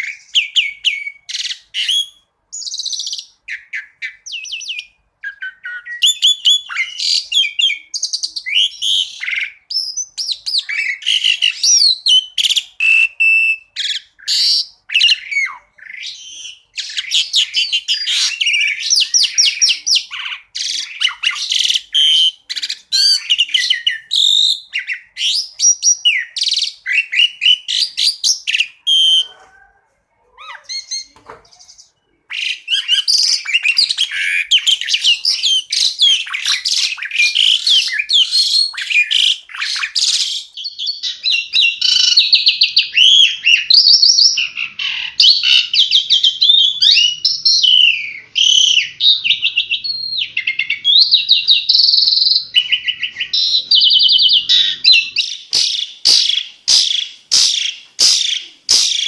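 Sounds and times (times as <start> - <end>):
starling singing: 0.0 - 59.0.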